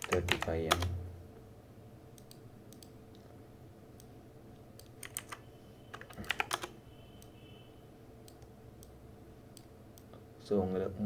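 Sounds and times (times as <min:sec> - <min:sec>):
computer keyboard typing: 0:00.0 - 0:00.9, 0:04.8 - 0:07.3
faint steady hum: 0:00.0 - 0:11.0.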